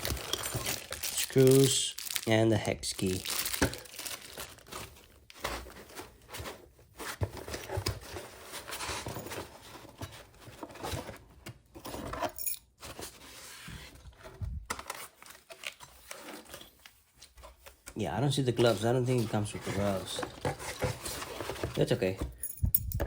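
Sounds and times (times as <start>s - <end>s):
packing material rustling: 0.0s - 9.5s.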